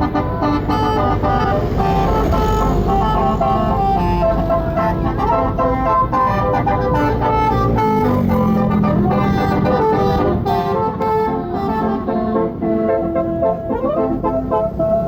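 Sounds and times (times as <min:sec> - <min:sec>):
air horns playing a tune: 0:00.0 - 0:15.0
bus engine rumble: 0:00.0 - 0:15.0.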